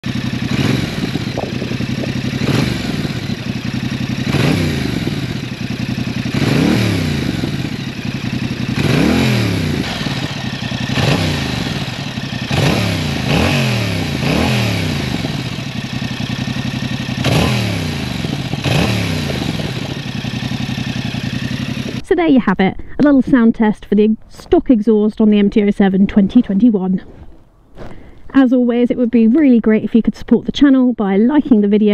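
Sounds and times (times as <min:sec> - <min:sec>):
motorcycle engine revving: 0:00.0 - 0:22.1.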